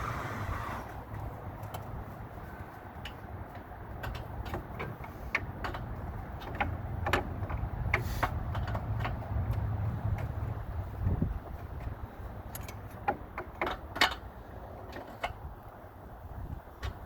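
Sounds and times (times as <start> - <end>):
wind rumble on microphone: 0.0 - 17.0.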